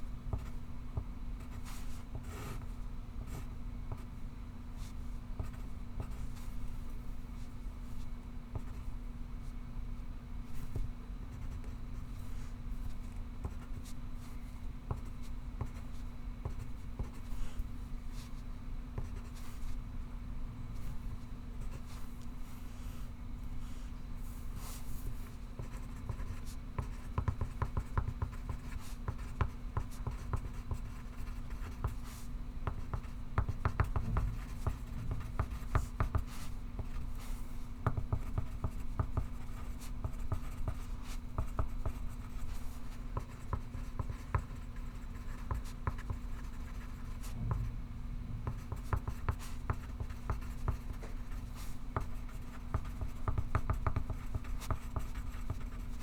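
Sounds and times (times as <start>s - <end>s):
low room hum: 0.0s - 56.0s
pencil scratching on paper: 48.4s - 56.0s.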